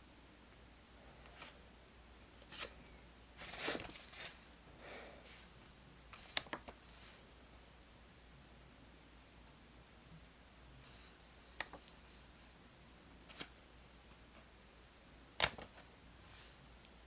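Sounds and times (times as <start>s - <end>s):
paper rustling: 2.4s - 2.8s, 3.4s - 4.4s.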